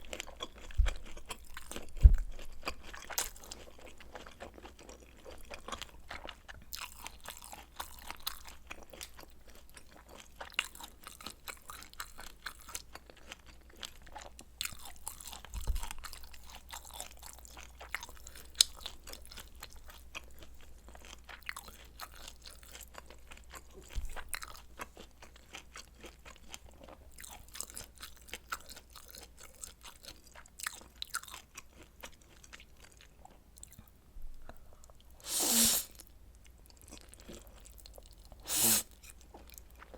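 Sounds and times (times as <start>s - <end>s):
person chewing and biting food: 0.0s - 39.9s.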